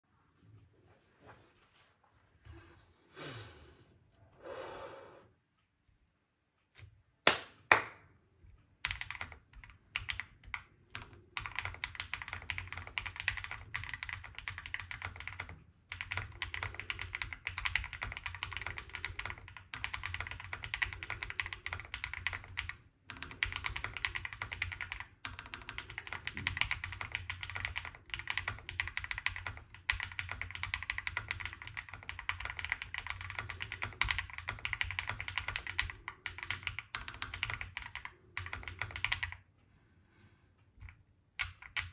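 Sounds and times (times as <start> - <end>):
mechanical keyboard typing: 8.8 - 39.4, 40.8 - 41.9.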